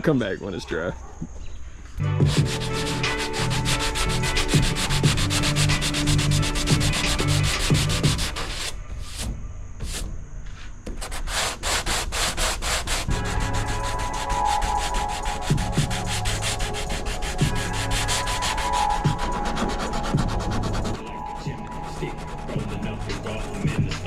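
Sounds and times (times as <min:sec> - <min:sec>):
music with bass beat: 0:02.0 - 0:08.7, 0:15.0 - 0:24.0
sanding strokes: 0:02.2 - 0:10.1, 0:10.9 - 0:24.0.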